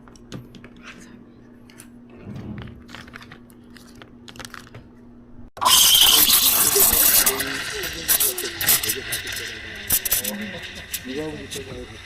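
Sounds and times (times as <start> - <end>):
clicks and crinkling: 2.8 - 4.9
steady low hum: 6.4 - 12.0.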